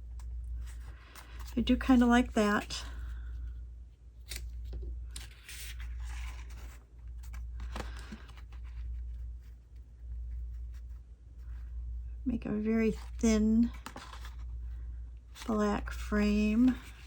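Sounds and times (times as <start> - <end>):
paper rustling and sliding: 5.1 - 9.3.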